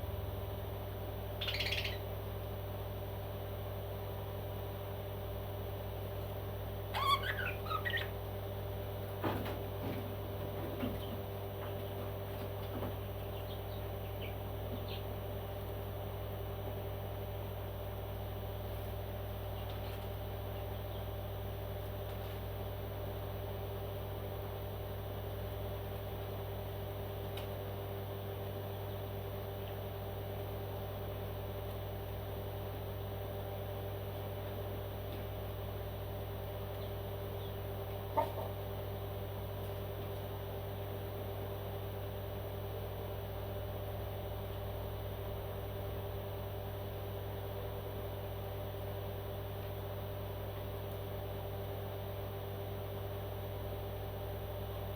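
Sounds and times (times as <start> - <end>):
low machine hum: 0.0 - 54.9.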